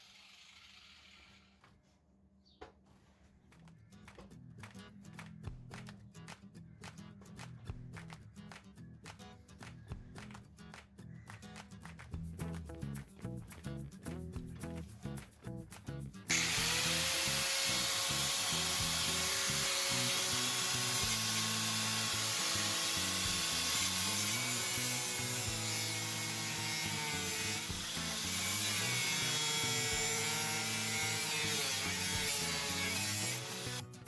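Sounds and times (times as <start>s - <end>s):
power tool grinding metal: 0.0s - 1.6s, 16.3s - 34.0s.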